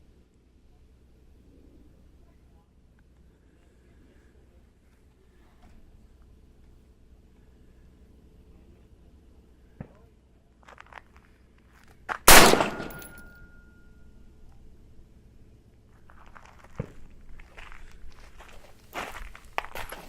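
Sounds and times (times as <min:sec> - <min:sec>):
rifle shot with echo: 0:12.3 - 0:13.4.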